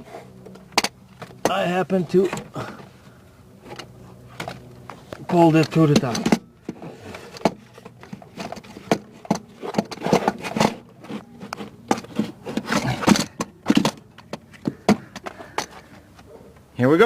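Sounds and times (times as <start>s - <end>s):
starter motor scraping and clunking: 0.0s - 16.7s.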